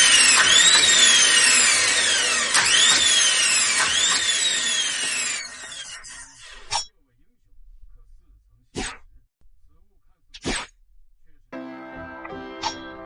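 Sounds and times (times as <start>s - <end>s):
small electric motor whining: 0.0s - 6.7s.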